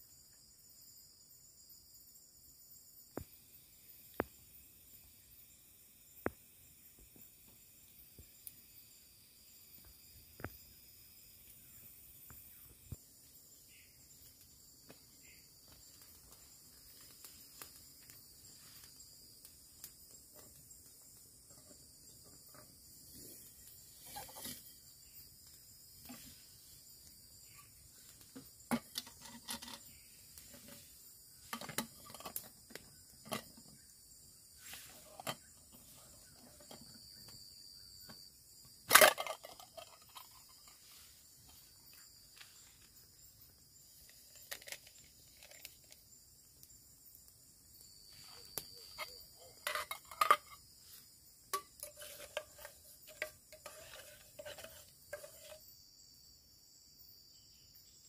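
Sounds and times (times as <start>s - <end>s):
insects chirring: 0.0s - 58.0s
clinks of utensils being handled: 49.0s - 50.6s.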